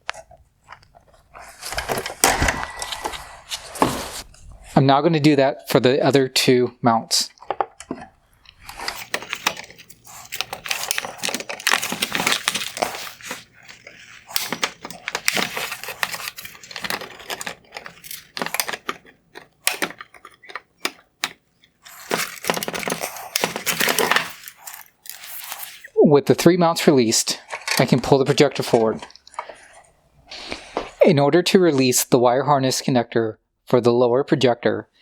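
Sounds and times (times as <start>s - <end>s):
plastic clicking and rattling: 0.0s - 3.2s, 7.3s - 25.9s
handling noise: 0.0s - 4.8s, 7.3s - 25.9s.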